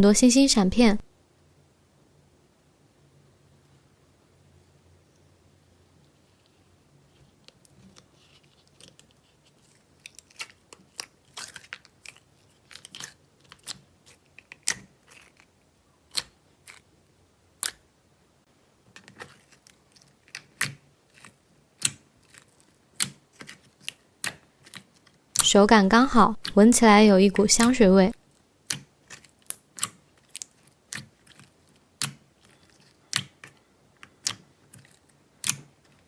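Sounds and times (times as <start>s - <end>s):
slime popping and crackling: 27.3s - 33.5s.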